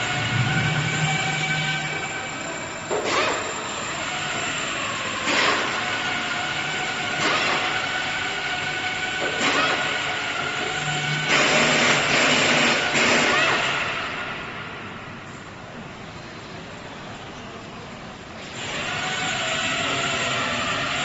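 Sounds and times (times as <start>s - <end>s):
cnc router whining: 0.0s - 11.9s.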